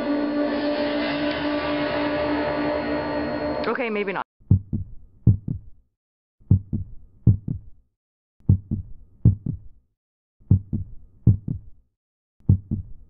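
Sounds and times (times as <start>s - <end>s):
heartbeat thumps: 4.4s - 5.8s, 6.4s - 7.8s, 8.4s - 9.7s, 10.4s - 11.8s, 12.4s - 13.0s.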